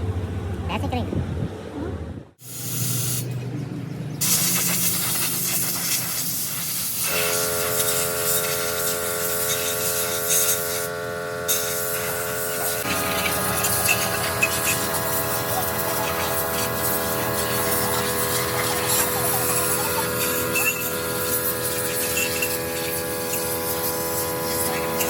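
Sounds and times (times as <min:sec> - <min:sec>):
steady air hissing: 0:02.4 - 0:03.3, 0:04.2 - 0:25.0
mechanical whine: 0:07.0 - 0:25.0.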